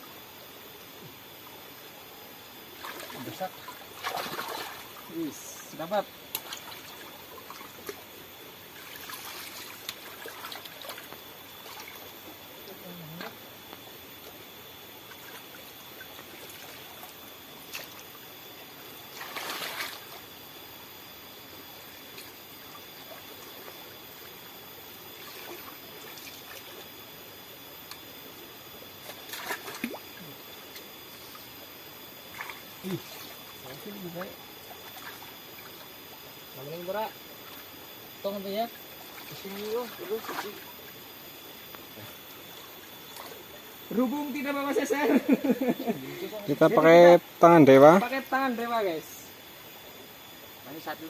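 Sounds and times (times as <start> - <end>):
water trickling: 1.3 - 49.1
water splashes: 2.7 - 13.4, 15.0 - 20.3, 25.1 - 27.0, 29.0 - 41.1, 41.8 - 43.8.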